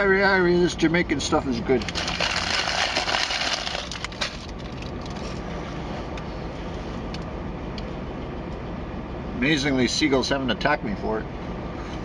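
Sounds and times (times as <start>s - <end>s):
steady low rumble: 0.0s - 12.0s
food wrapper crinkling: 1.9s - 5.3s.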